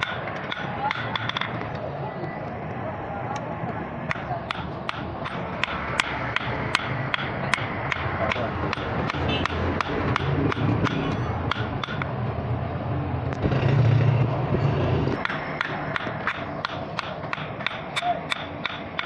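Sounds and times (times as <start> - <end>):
hammer striking metal: 0.0 - 1.6, 4.1 - 12.2, 15.2 - 19.0.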